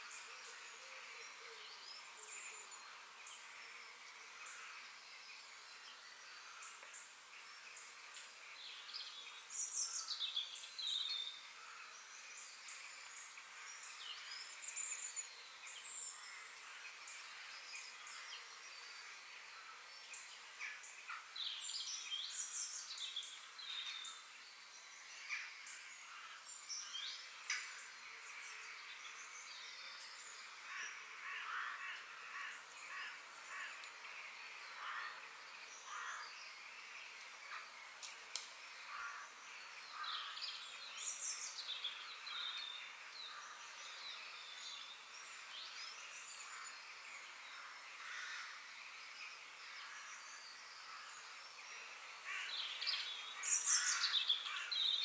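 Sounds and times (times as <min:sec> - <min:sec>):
birds chirping and calling: 0:25.2 - 0:55.0.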